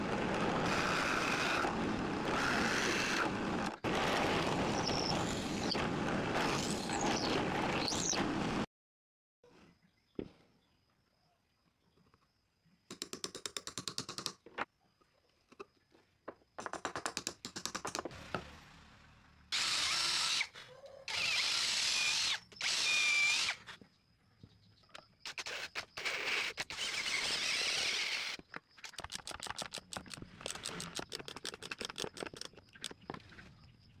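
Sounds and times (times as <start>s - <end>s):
power tool running: 18.1s - 23.6s
rapid even clicking: 28.8s - 33.0s.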